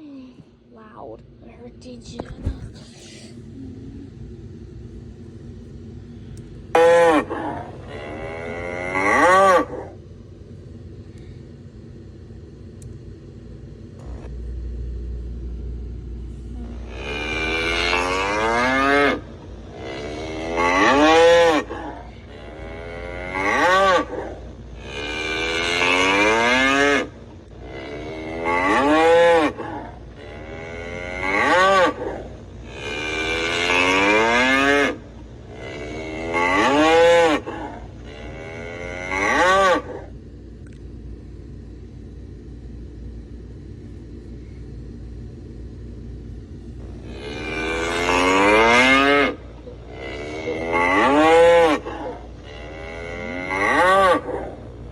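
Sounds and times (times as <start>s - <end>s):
bull bellowing: 6.7s - 10.0s, 16.6s - 40.1s, 46.8s - 54.9s.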